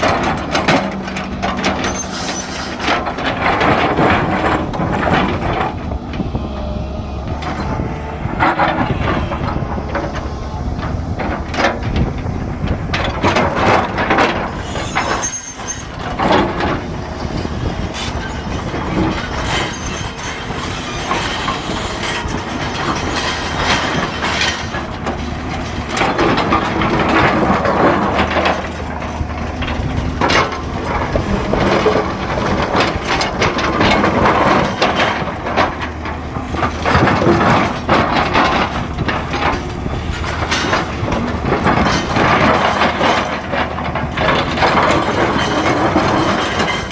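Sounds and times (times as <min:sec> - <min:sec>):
diesel engine droning: 0:00.0 - 0:46.9.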